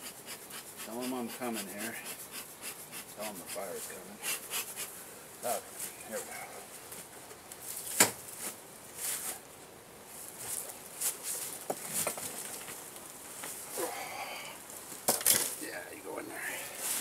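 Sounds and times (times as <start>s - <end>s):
bee smoker bellows hissing: 0.0s - 6.3s.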